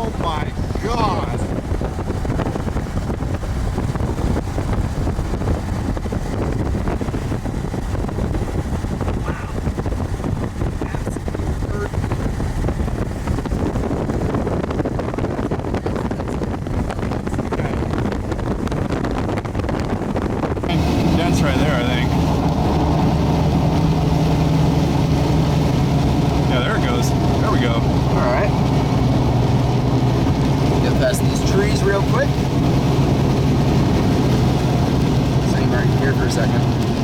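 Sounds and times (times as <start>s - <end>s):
vehicle running: 0.0s - 37.0s
wind blowing over microphone: 0.0s - 37.0s.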